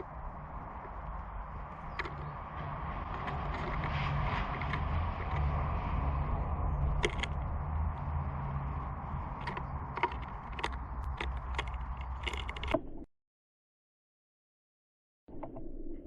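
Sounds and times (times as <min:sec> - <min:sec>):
steady low hum: 0:00.0 - 0:12.7
sharp taps and clicks: 0:09.3 - 0:12.8.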